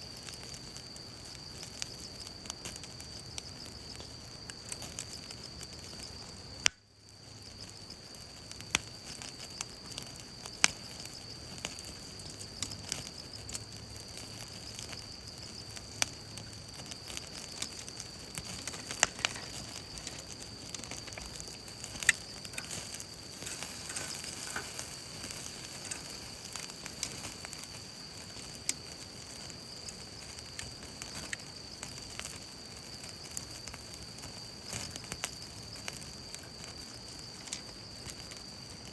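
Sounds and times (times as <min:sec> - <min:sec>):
fire pops: 0:00.0 - 0:38.9
wood fire crackling: 0:00.0 - 0:38.9.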